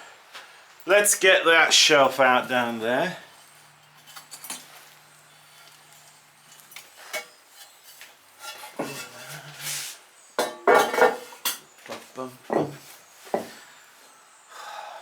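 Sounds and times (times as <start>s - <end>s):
fired clay clinking on kiln shelving: 1.7s - 13.6s
pottery scraping: 2.3s - 11.6s.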